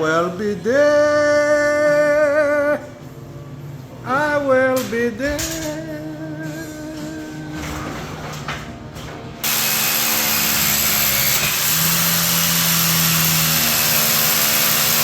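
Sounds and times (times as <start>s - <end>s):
background song: 0.0s - 8.6s
loud power tool running: 9.4s - 15.0s.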